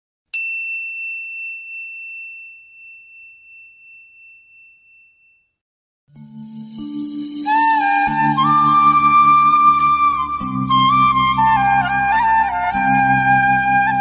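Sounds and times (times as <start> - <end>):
bell-like chime ringing: 0.4 - 7.7.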